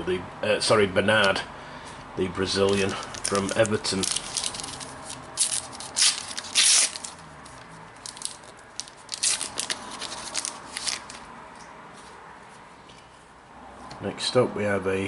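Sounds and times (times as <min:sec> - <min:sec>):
foil wrapper tearing and crinkling: 0:02.6 - 0:11.3.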